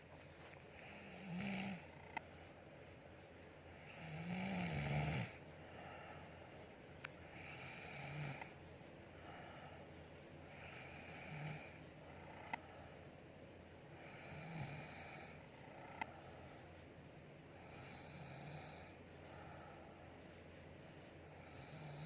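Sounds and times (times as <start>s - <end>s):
person snoring: 0.7s - 1.9s, 3.8s - 5.4s, 7.3s - 8.5s, 10.5s - 12.6s, 14.0s - 16.2s, 17.6s - 19.8s, 21.4s - 22.0s.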